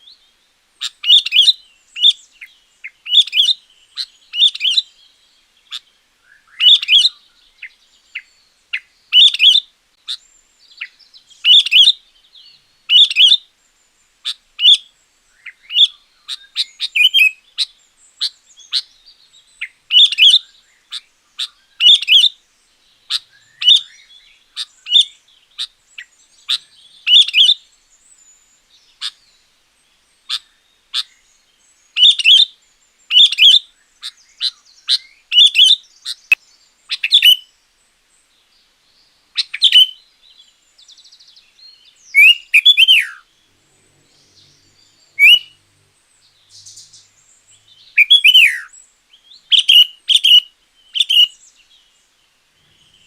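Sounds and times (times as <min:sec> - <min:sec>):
bulbul chirping: 0:44.4 - 0:45.6, 0:47.8 - 0:48.7.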